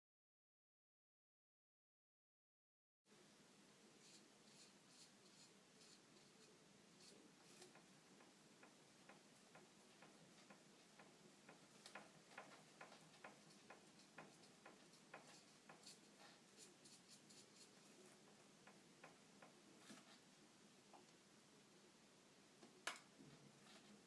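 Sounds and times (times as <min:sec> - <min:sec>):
faint irregular clicks: 0:04.5 - 0:20.2.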